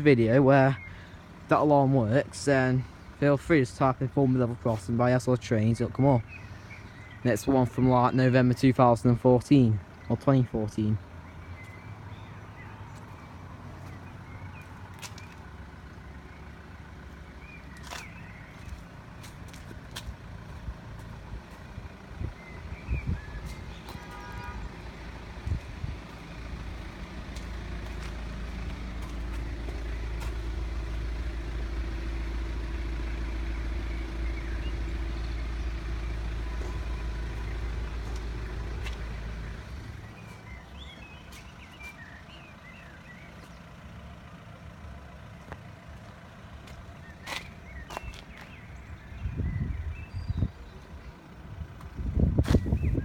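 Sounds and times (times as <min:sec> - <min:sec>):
birds chirping: 0:00.0 - 0:53.0
lorry passing rumble: 0:11.9 - 0:43.0.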